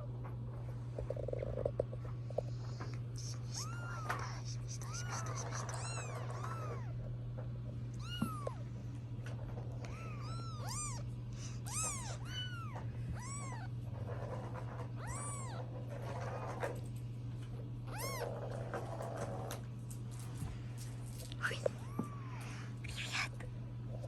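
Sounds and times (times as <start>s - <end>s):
steady low hum: 0.0s - 24.0s
kitten mewing: 3.2s - 7.0s, 7.9s - 8.7s, 9.6s - 16.4s, 17.8s - 18.7s, 21.6s - 22.4s.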